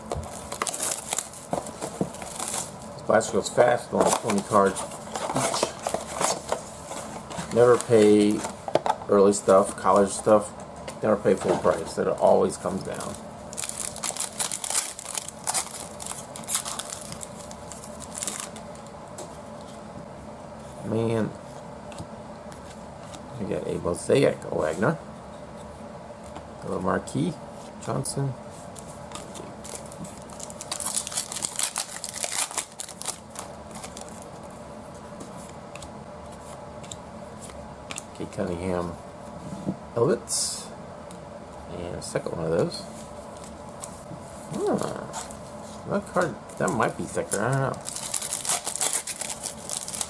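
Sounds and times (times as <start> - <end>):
wrapper crinkling and rustling: 0.2 - 2.8, 12.9 - 18.6, 29.2 - 34.3, 46.1 - 50.0.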